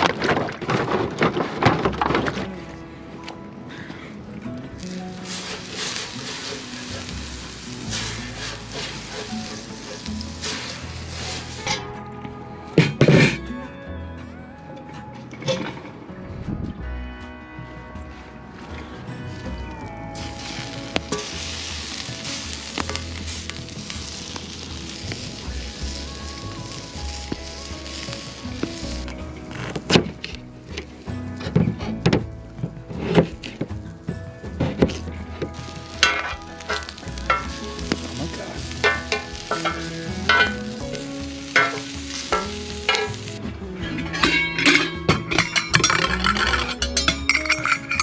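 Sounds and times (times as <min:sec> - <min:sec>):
plucked guitar music: 0:00.0 - 0:48.0
food sizzling in a pan: 0:04.9 - 0:11.8, 0:20.4 - 0:29.1, 0:35.5 - 0:43.4.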